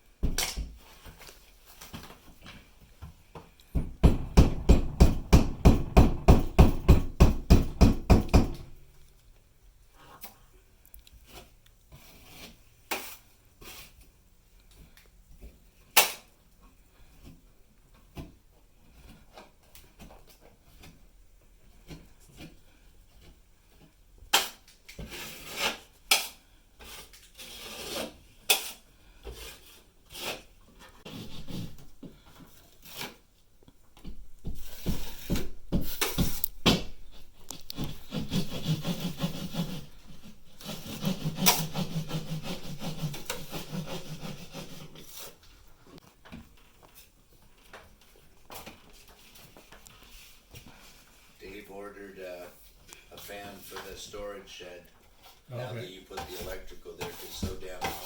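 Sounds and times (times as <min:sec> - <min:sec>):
tool sawing and scraping: 0:03.6 - 0:08.8, 0:11.2 - 0:14.1, 0:21.7 - 0:33.4, 0:34.0 - 0:46.1, 0:53.0 - 0:58.0
scattered knocks and taps: 0:03.7 - 0:08.7.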